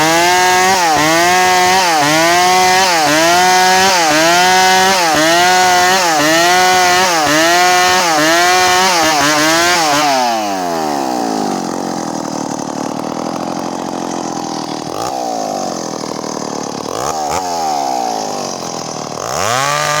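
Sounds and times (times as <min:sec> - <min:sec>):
chainsaw cutting wood: 0:00.0 - 0:20.0
chainsaw idling and blipped: 0:00.0 - 0:20.0.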